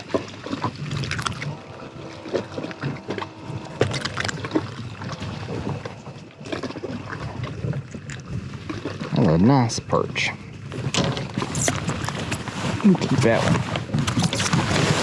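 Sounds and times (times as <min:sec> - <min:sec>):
knocks and clatter of handling: 0:10.8 - 0:12.5.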